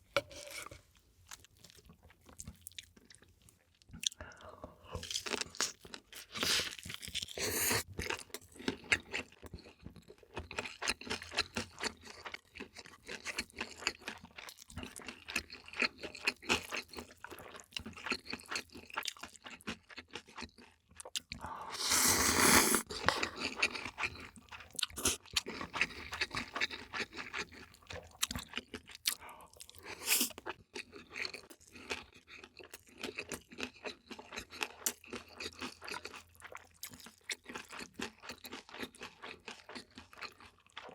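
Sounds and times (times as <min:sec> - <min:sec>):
chewing crunchy food: 0:00.1 - 0:40.9
wet mouth clicks: 0:21.7 - 0:23.5.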